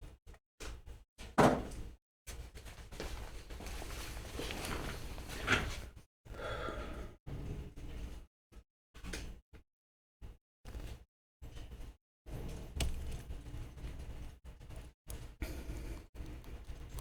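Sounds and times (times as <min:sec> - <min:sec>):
scraping and rustling: 0:03.0 - 0:05.9.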